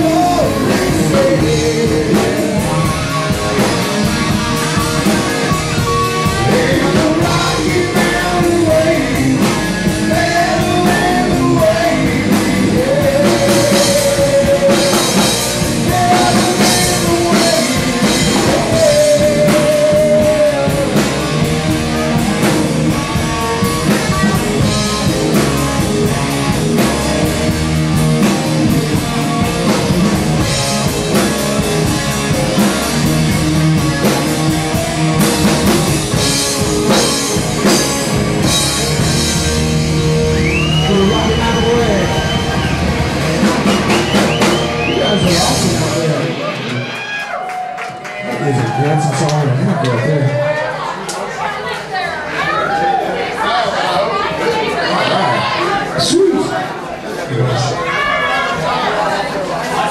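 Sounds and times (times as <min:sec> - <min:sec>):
person singing: 0:00.0 - 0:03.8, 0:05.8 - 0:21.6
drum kit: 0:00.0 - 0:49.4
guitar: 0:00.0 - 0:59.9.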